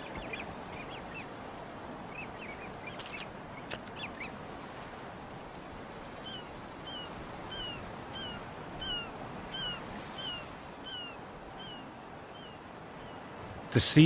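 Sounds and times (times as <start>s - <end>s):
bird calling: 0.0s - 1.3s, 2.1s - 4.4s, 6.2s - 13.3s.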